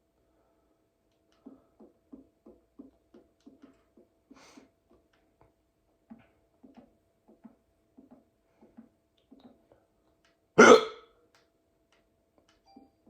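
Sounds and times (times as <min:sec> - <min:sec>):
person hiccuping: 0:10.6 - 0:11.0.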